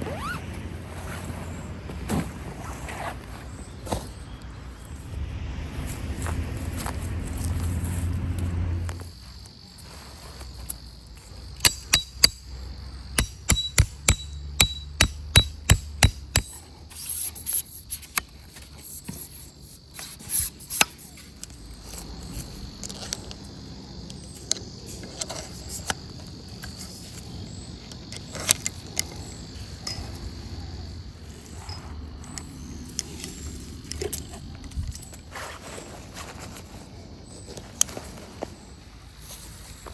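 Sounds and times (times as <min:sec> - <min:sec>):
insect drone: 0:00.0 - 0:39.9
hammer blows: 0:13.2 - 0:16.6.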